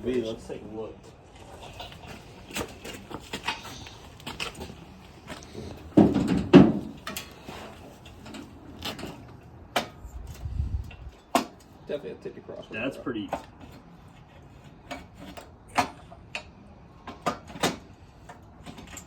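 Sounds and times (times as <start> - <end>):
light knocks and clicks of parts: 1.0 - 11.8.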